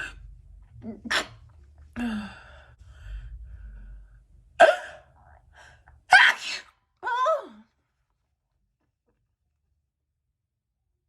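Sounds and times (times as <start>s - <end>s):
woman sneezing: 1.0s - 1.4s, 6.1s - 6.7s.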